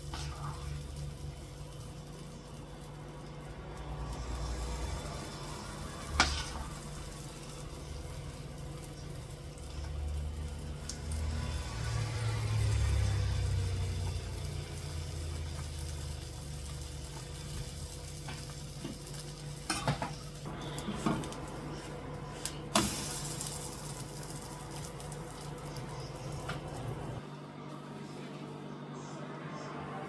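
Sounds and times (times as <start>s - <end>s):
pancakes sizzling in a frying pan: 0.0s - 27.2s.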